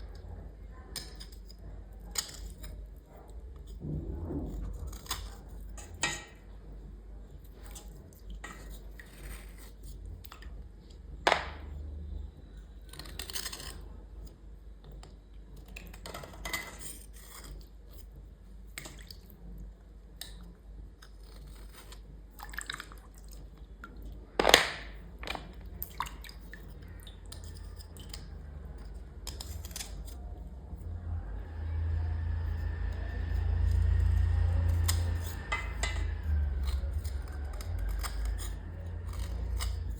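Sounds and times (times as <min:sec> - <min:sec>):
low hum: 0:03.1 - 0:07.5, 0:26.7 - 0:39.9
utensils scrubbed and scraped: 0:26.4 - 0:39.9.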